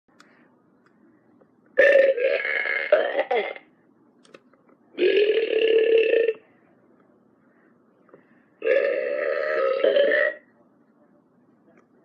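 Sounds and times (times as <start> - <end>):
toy dog burping: 1.8 - 3.6, 5.0 - 6.4, 8.6 - 10.4.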